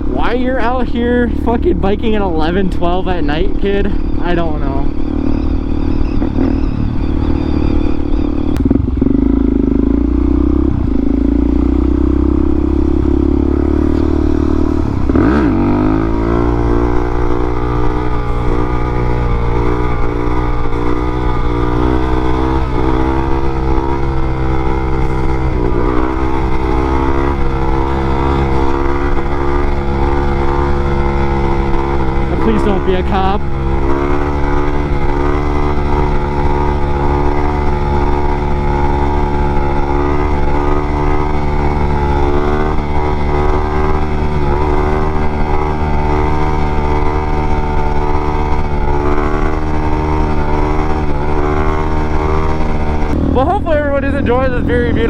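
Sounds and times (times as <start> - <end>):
motorcycle engine running: 0.0 - 55.0.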